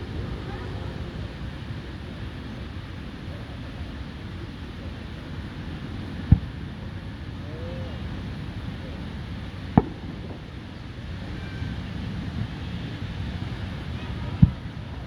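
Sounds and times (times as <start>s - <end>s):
low background noise: 0.0s - 15.0s
fireworks booming: 6.1s - 7.2s, 8.4s - 15.0s.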